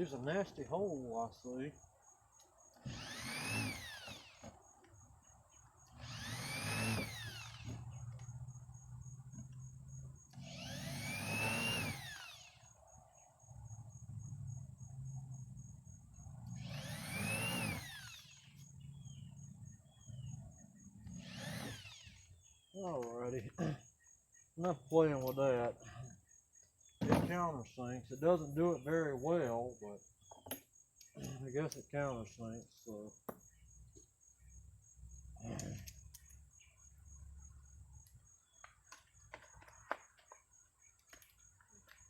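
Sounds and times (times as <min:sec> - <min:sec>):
power drill countersinking wood: 0:02.7 - 0:12.8, 0:16.5 - 0:19.2, 0:21.0 - 0:23.1.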